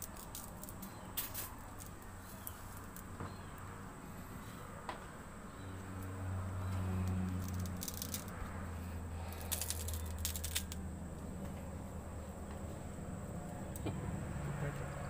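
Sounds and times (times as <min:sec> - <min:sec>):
plant stalk crackling and rattling: 0:00.0 - 0:03.6, 0:06.0 - 0:08.6, 0:09.2 - 0:10.9.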